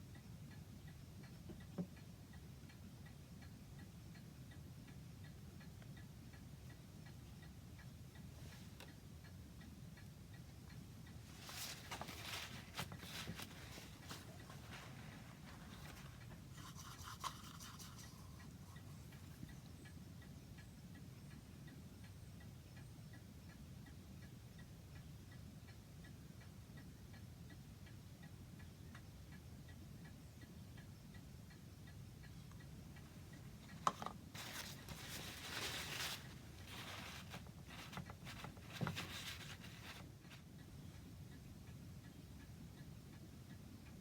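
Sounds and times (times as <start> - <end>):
clock ticking: 0.0 - 44.0
low steady hum: 0.0 - 44.0
rubbing and rustling handling noise: 11.2 - 19.5, 33.4 - 40.5.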